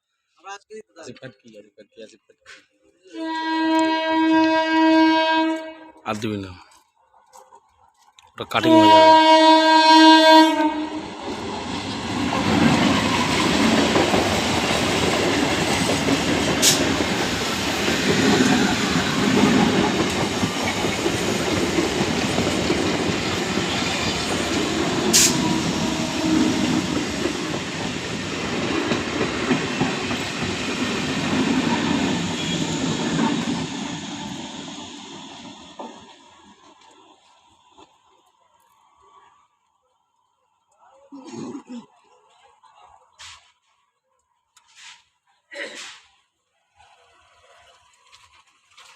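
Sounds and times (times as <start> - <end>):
train horn blast: 3.1 - 6.0, 8.6 - 11.2, 24.6 - 27.1
train rumbling past: 8.5 - 38.2
wheels clacking over rails: 11.2 - 34.2.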